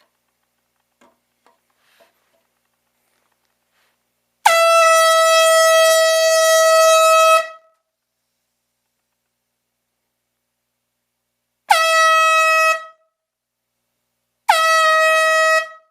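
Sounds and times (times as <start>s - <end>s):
air horn blast: 4.4s - 7.7s, 11.7s - 13.0s, 14.5s - 15.9s.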